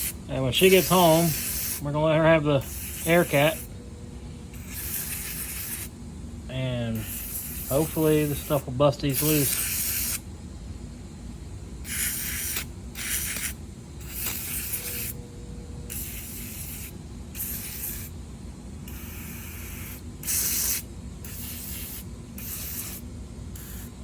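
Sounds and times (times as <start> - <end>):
aerosol can spraying hiss: 0.0 - 1.9, 2.6 - 3.7, 4.6 - 5.9, 7.0 - 10.2, 11.8 - 15.2, 15.9 - 18.2, 18.8 - 24.0.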